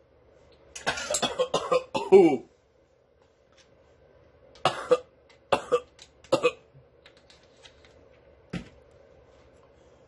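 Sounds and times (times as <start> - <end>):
person coughing: 0.8 - 2.5, 4.6 - 6.7.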